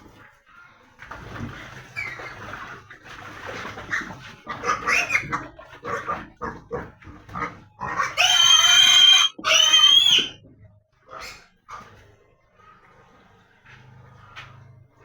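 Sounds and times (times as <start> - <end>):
young pigs grunting: 3.8 - 10.4
pig squealing: 3.9 - 10.4, 11.1 - 11.8.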